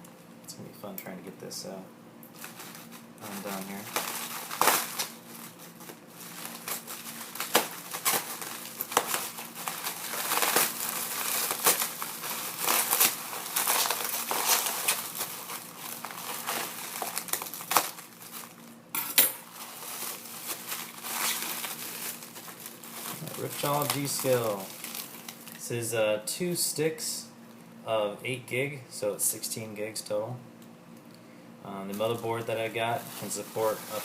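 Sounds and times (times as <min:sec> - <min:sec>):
plastic packaging crinkling: 0:02.3 - 0:25.6, 0:31.9 - 0:34.0.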